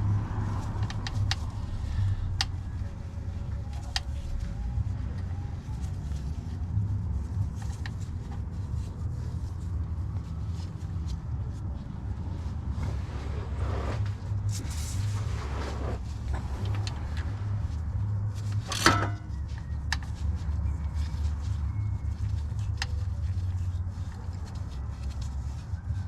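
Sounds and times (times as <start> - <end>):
tools rustling and scraping: 13.4 - 19.7
metallic clank with ring: 18.7 - 19.3.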